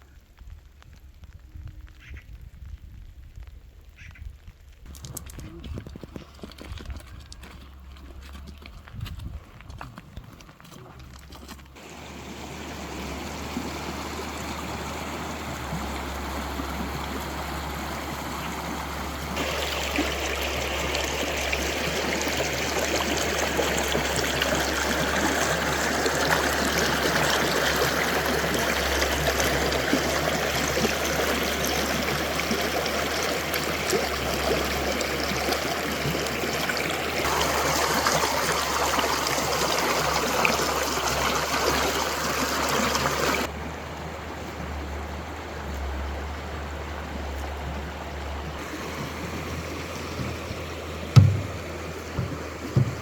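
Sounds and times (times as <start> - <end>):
water rushing: 11.8 - 53.0.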